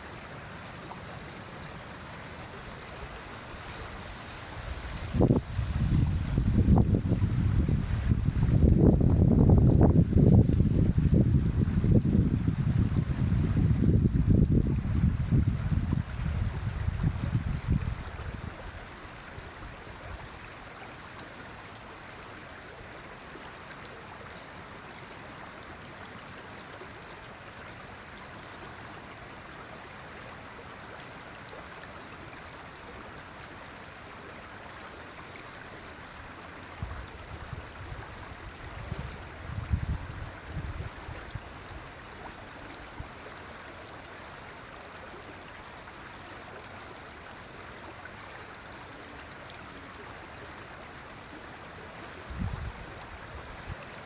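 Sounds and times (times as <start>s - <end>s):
river water flowing: 0.0s - 54.0s
wind on microphone: 4.6s - 18.5s, 38.6s - 41.4s, 52.3s - 53.8s.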